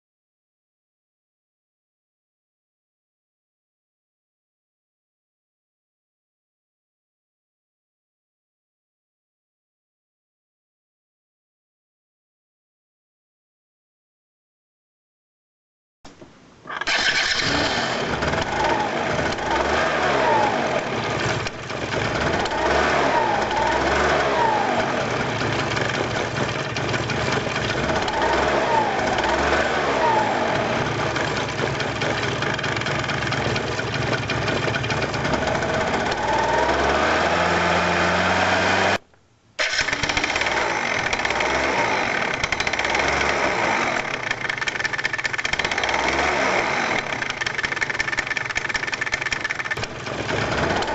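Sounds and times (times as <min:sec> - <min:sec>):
scooter engine revving: 0:16.7 - 0:39.0, 0:39.6 - 0:50.9.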